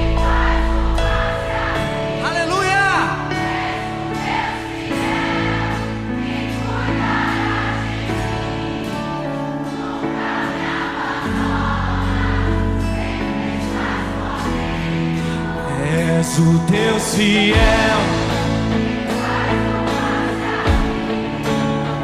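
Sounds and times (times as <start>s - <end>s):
bass: 0.0s - 3.6s, 11.3s - 22.0s
keyboard chords: 0.0s - 22.0s
wordless choir-like voices: 0.0s - 22.0s.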